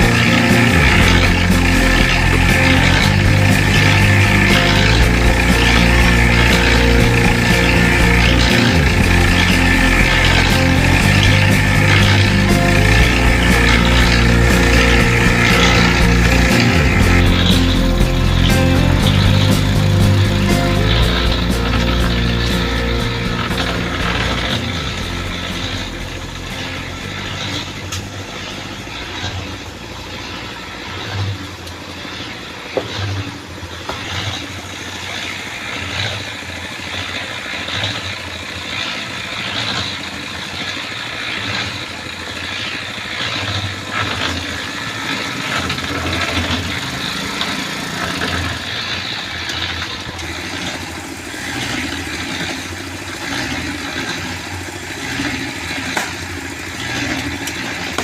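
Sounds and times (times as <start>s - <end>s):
engine running: 0.0s - 58.0s
knocks and clanks: 43.2s - 58.0s.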